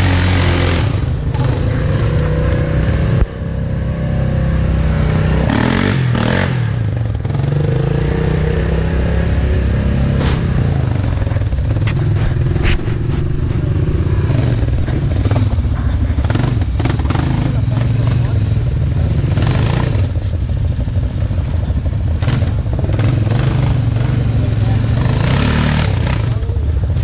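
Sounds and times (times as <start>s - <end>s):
off-road vehicle engine running: 0.0s - 27.0s
sharp knocks and clatter: 10.1s - 15.5s.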